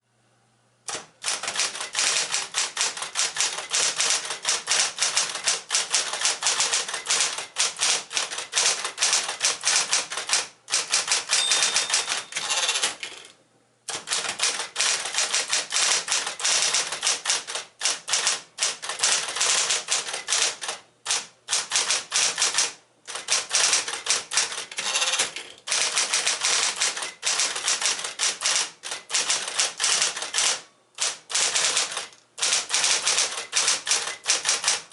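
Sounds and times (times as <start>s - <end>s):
electric typewriter keystroke clacks: 0.9s - 13.3s, 13.9s - 34.9s.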